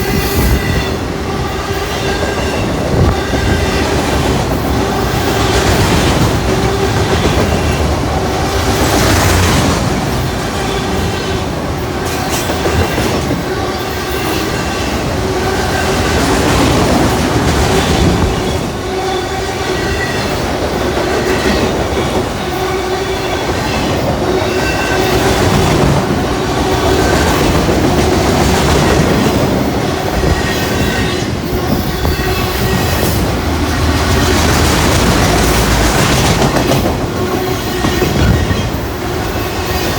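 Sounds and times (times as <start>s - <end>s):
freight train rumbling past: 0.0s - 39.9s.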